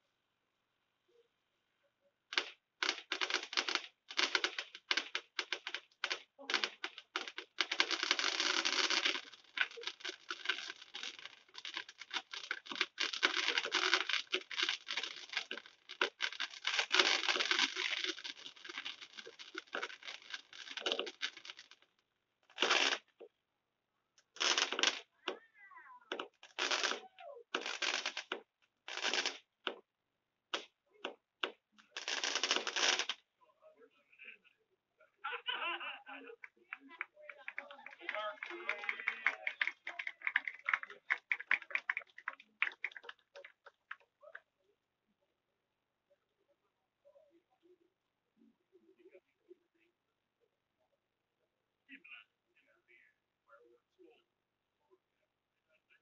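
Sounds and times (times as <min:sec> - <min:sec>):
fireworks crackling: 0:02.3 - 0:23.2, 0:24.3 - 0:25.4, 0:26.0 - 0:29.8, 0:31.4 - 0:33.3, 0:37.0 - 0:44.2.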